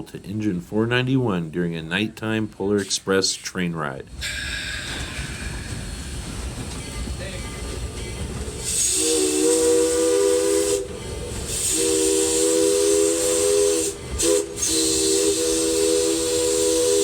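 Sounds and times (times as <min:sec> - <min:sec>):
steam hissing: 0:04.1 - 0:17.0
steam locomotive whistle: 0:08.6 - 0:17.0.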